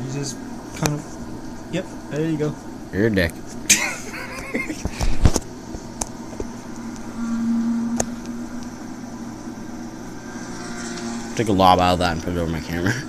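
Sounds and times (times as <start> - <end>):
low mechanical hum: 0.0 - 13.0
short held tone: 6.8 - 9.6.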